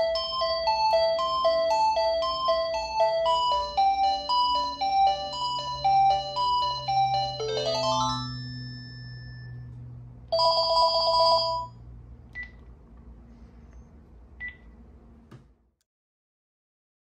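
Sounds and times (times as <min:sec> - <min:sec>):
electronic melody ringtone: 0:00.0 - 0:09.7, 0:10.3 - 0:11.8
warbling two-tone electronic ring: 0:00.0 - 0:09.7.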